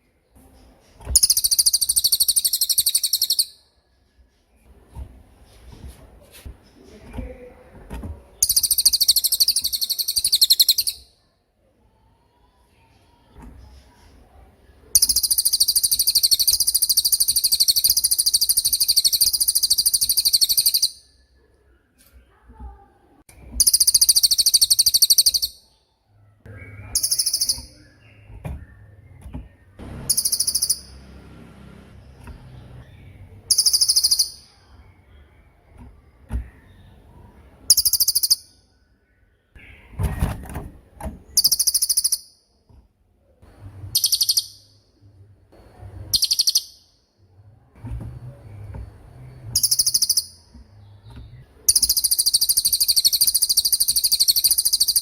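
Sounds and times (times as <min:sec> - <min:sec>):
songbird trilling: 0:01.2 - 0:03.6, 0:08.4 - 0:11.1, 0:15.0 - 0:21.1, 0:23.6 - 0:25.6, 0:26.5 - 0:29.2, 0:30.0 - 0:31.1, 0:32.8 - 0:34.6, 0:37.7 - 0:38.6, 0:41.4 - 0:42.4, 0:43.9 - 0:44.8, 0:46.1 - 0:47.0, 0:49.4 - 0:51.0, 0:51.7 - 0:55.0.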